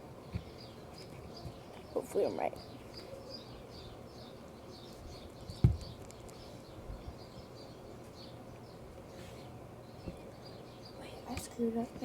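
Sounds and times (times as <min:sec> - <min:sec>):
bird chirping: 0:00.2 - 0:11.8
dull thump: 0:05.5 - 0:05.9.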